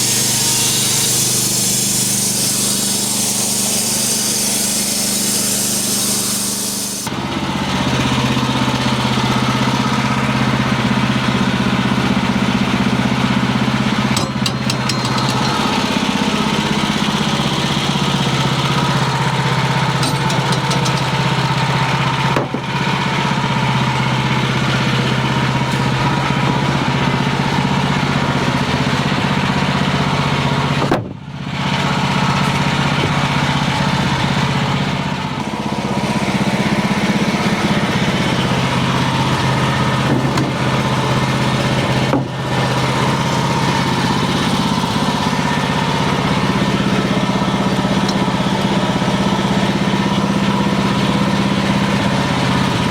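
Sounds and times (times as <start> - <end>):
band blade cutting wood hiss: 0.0 - 7.1
sawmill engine running: 0.0 - 52.9.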